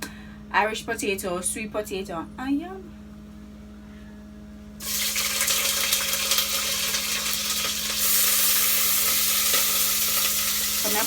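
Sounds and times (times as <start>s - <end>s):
food sizzling in hot oil: 4.8s - 11.0s.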